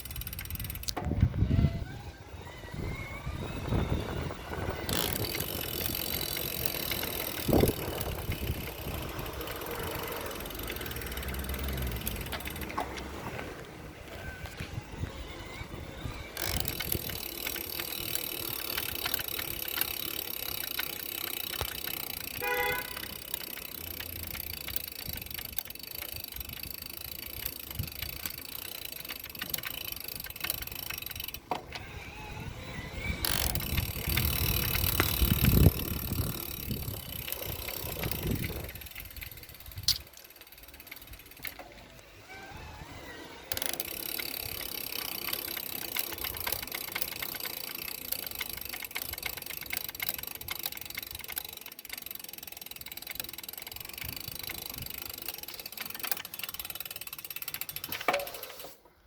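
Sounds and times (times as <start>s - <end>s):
road and wind noise: 0.0s - 59.0s.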